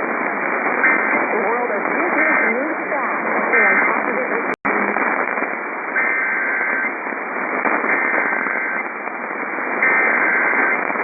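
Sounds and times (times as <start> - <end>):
radio static hiss: 0.0 - 11.0
buzzing digital data tone: 6.0 - 7.0, 9.8 - 10.9.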